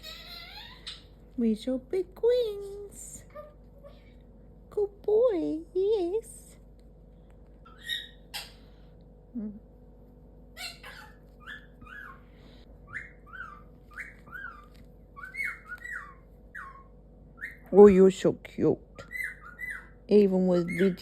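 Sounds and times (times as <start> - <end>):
parrot chirps and clicks: 12.9 - 17.7, 19.0 - 19.9.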